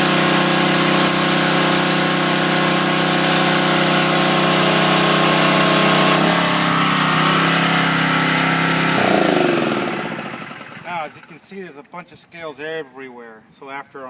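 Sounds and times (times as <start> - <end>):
spray jet hissing: 0.0 - 6.3, 8.9 - 11.0
pressure washer engine: 0.0 - 11.4.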